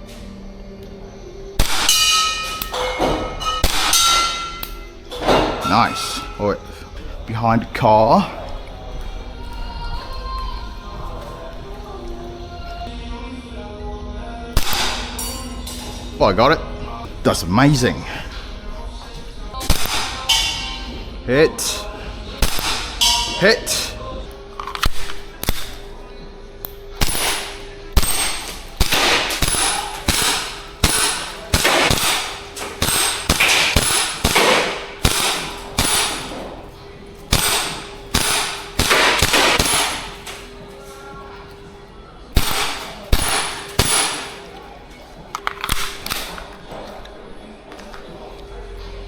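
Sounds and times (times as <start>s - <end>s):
airsoft gun firing single shots: 1.6s - 2.0s, 27.0s - 36.3s, 37.3s - 40.2s.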